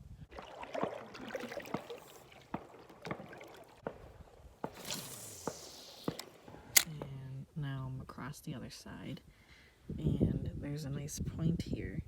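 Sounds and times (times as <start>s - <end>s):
paddle splashing water: 0.3s - 6.5s.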